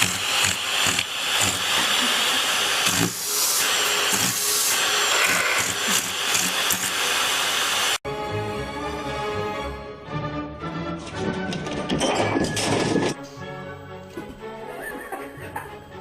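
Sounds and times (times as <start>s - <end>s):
vacuum cleaner running: 0.0s - 8.0s
music: 8.0s - 16.0s.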